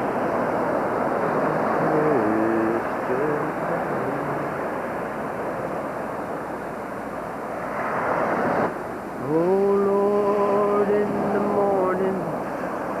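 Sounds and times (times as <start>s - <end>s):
surf: 0.0s - 13.0s
person singing a hymn: 1.2s - 4.6s, 9.2s - 12.7s.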